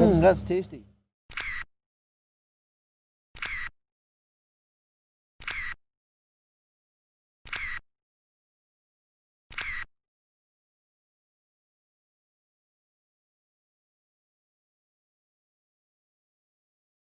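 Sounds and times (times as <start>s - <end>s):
camera shutter click: 1.3s - 1.6s, 9.5s - 9.8s.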